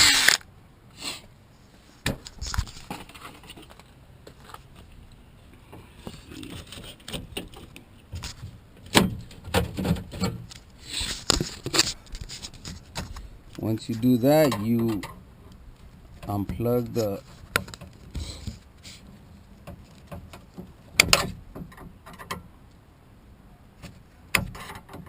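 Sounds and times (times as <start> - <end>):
power drill: 0.0 - 0.4.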